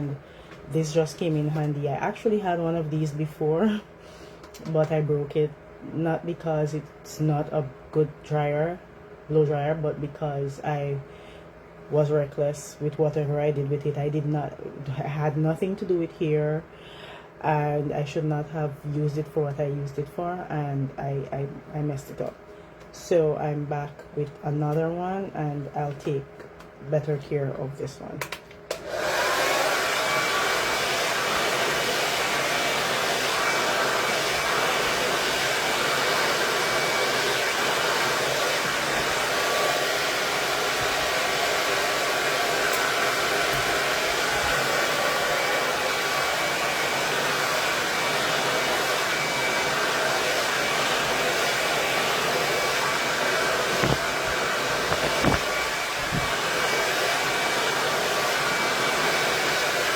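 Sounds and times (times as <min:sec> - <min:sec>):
hair dryer running: 0:00.0 - 0:06.8, 0:28.2 - 0:59.9.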